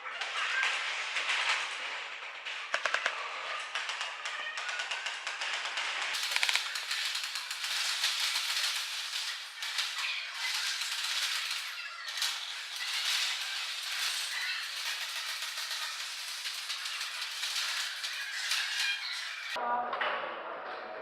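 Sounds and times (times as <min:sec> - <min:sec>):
airsoft gunfire rattle: 0:05.2 - 0:18.1.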